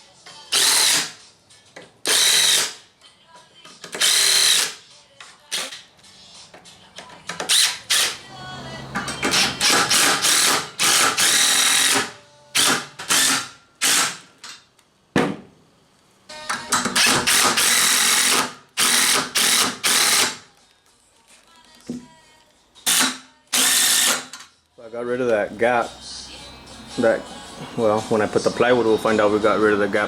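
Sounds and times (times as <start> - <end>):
impact driver driving screws into wood: 0.5 - 1.2, 2.0 - 2.8, 3.9 - 4.8, 9.2 - 14.3, 16.6 - 20.4, 22.9 - 24.4.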